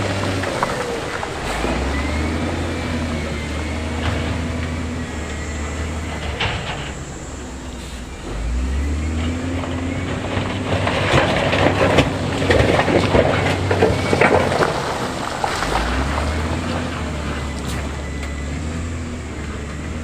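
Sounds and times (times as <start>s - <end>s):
diesel engine of heavy equipment: 0.0s - 20.0s
stone and rock clattering: 9.5s - 17.1s.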